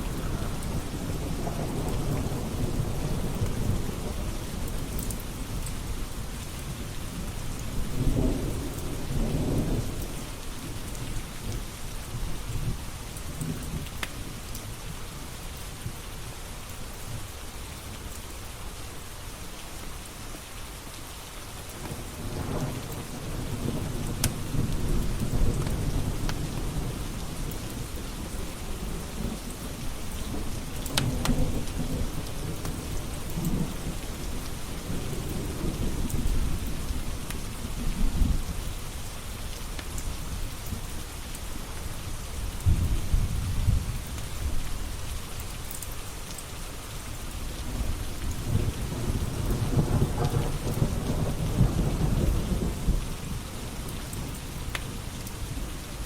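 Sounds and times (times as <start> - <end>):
rolling thunder: 0.0 - 5.0, 47.6 - 53.4
heavy rain: 0.0 - 56.0.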